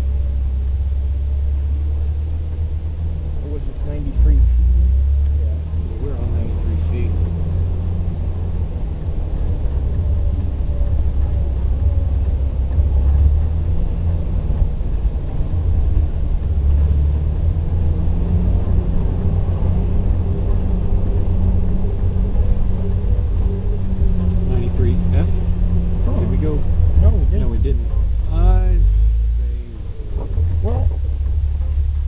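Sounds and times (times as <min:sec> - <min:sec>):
low engine rumble from inside vehicle: 0:00.0 - 0:32.0.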